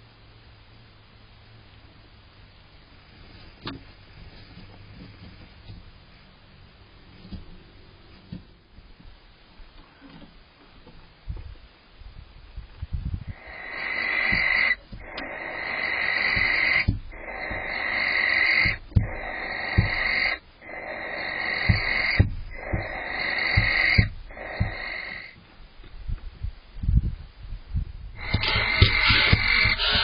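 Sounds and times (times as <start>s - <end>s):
owl stamping feet: 3.3s - 6.1s, 7.1s - 9.2s, 13.3s - 25.4s, 28.2s - 30.0s
owl rasping hisses: 13.3s - 25.4s, 28.2s - 30.0s.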